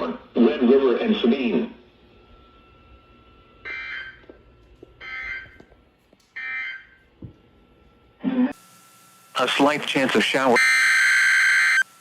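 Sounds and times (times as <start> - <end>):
digital data tone bursts: 9.4 - 11.9.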